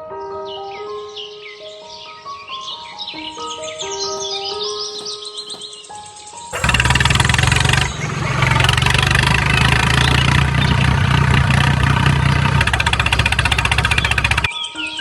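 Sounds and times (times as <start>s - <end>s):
motor humming: 6.6s - 14.5s.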